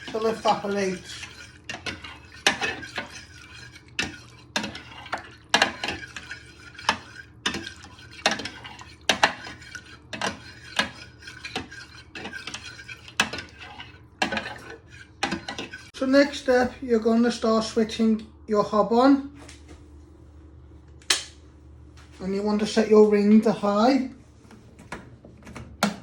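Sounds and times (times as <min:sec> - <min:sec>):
spoon scraping jug: 0:00.0 - 0:16.4.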